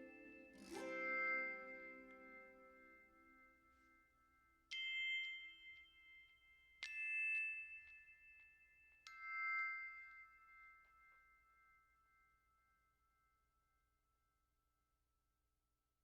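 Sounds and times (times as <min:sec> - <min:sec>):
struck bell-like notes ringing: 0:00.0 - 0:12.2.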